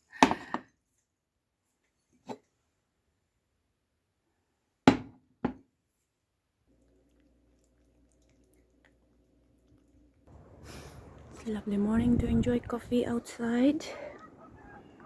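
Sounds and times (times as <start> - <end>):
faint steady hum: 6.8 - 15.0.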